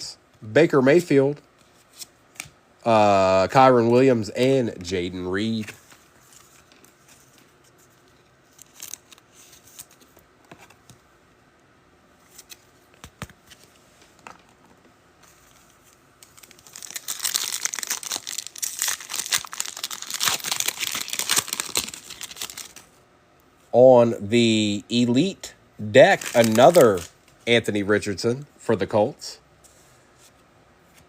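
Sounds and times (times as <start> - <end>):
card pack wrapper tearing and crinkling: 8.5 - 10.0, 16.2 - 22.9, 26.0 - 27.2.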